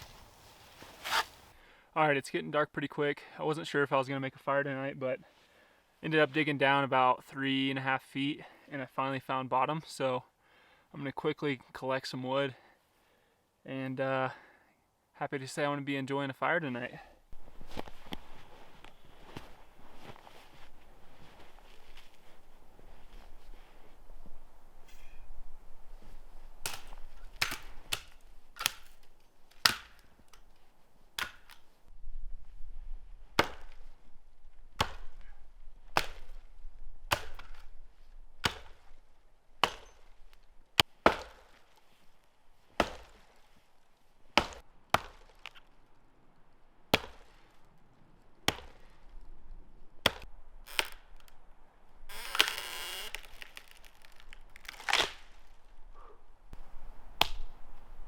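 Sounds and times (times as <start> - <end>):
axe chopping firewood: 26.6 - 30.4, 31.2 - 31.6, 33.4 - 33.9, 34.6 - 37.8, 38.4 - 39.0, 39.6 - 40.2, 40.8 - 41.8, 42.8 - 43.4, 44.3 - 45.7, 46.9 - 47.5, 48.4 - 49.0, 50.0 - 51.3, 52.2 - 55.4, 57.2 - 57.5
rasping crackle: 52.1 - 55.6.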